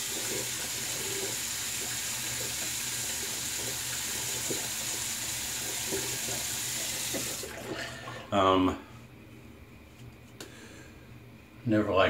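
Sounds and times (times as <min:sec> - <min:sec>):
tap running into sink: 0:05.8 - 0:07.6.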